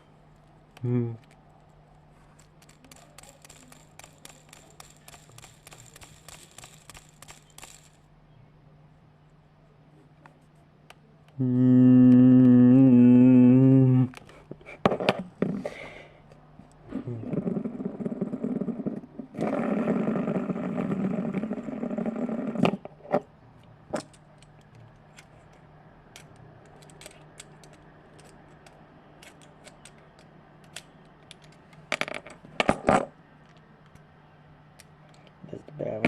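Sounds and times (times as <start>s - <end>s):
sharp plastic clicks: 2.4s - 8.0s, 24.0s - 31.8s.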